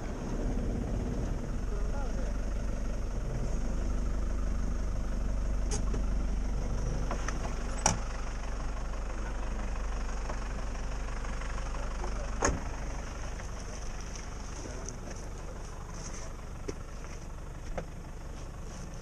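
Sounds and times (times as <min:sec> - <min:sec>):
motorcycle engine idling: 0:00.0 - 0:19.0.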